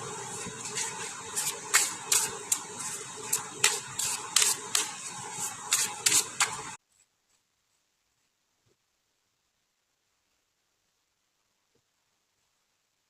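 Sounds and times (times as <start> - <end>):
cards being shuffled: 0.4 - 6.8.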